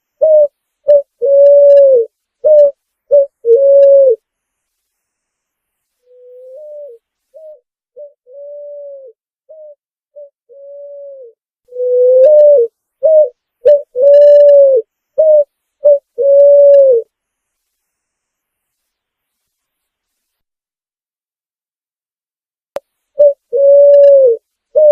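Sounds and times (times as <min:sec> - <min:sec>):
pigeon cooing: 0:00.2 - 0:04.2, 0:06.1 - 0:17.1, 0:23.2 - 0:24.9.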